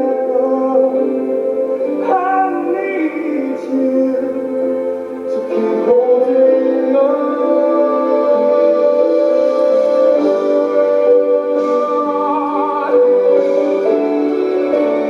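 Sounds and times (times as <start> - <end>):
slow song with held sung notes: 0.0 - 15.0
sustained chords: 0.0 - 15.0.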